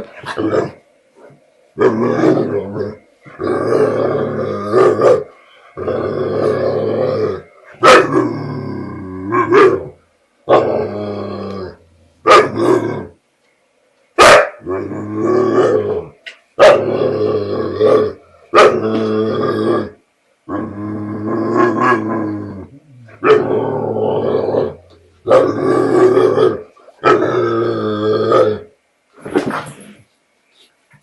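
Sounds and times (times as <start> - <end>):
dog growling: 0.0 - 13.2, 14.6 - 28.7
dog barking: 7.8 - 8.1, 14.2 - 14.6, 16.6 - 16.8, 18.6 - 18.8.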